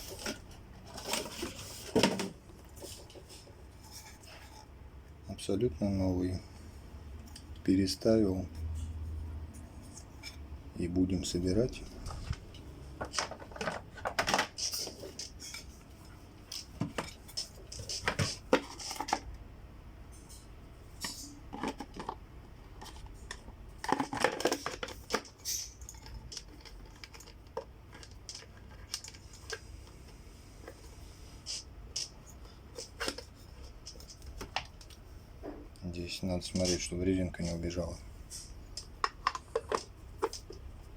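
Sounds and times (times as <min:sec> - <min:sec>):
plastic parts clicking and clattering: 0:00.0 - 0:04.6, 0:11.7 - 0:19.4, 0:21.0 - 0:29.7, 0:30.6 - 0:35.0, 0:36.4 - 0:37.7, 0:38.3 - 0:40.7.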